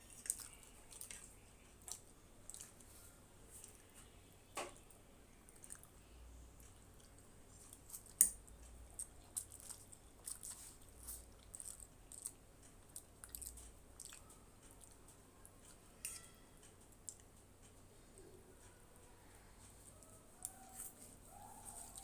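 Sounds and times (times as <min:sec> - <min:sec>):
person chewing noodles: 0:00.0 - 0:03.0, 0:05.4 - 0:06.0, 0:06.6 - 0:15.8.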